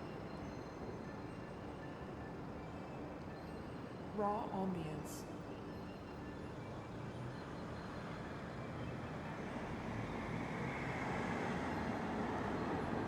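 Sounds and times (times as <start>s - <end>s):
road and engine traffic noise: 7.1s - 13.0s.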